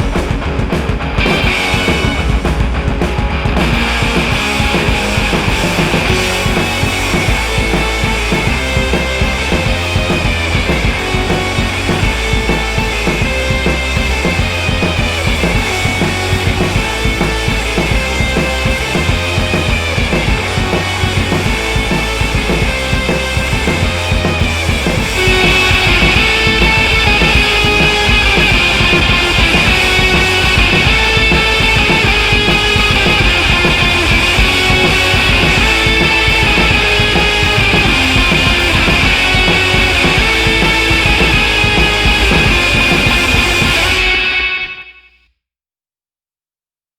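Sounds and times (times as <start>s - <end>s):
music with steady drum beat: 0.0s - 44.3s.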